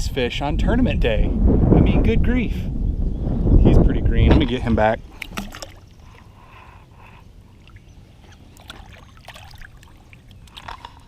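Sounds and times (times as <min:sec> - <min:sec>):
light water splashes: 0:04.4 - 0:11.0.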